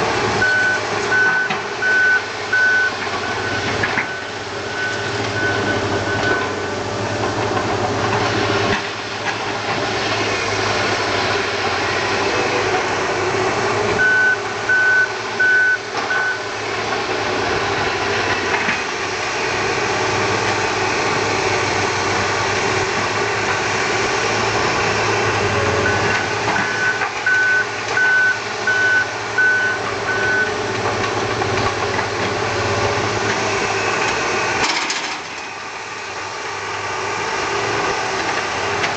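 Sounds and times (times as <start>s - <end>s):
vehicle engine running: 0.0s - 38.9s
reversing alarm beeping: 0.4s - 6.9s, 14.0s - 16.6s, 25.6s - 30.6s.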